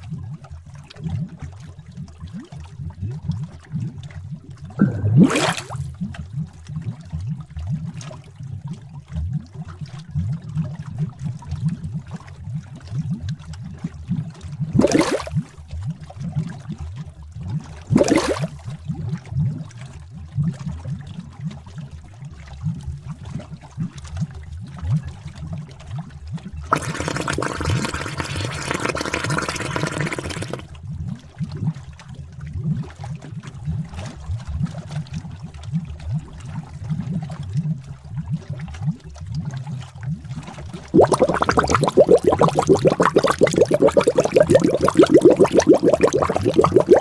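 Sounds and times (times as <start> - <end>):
thick liquid bubbling: 4.8 - 6.1, 14.0 - 16.2, 17.4 - 19.2, 26.5 - 30.7, 38.1 - 47.0.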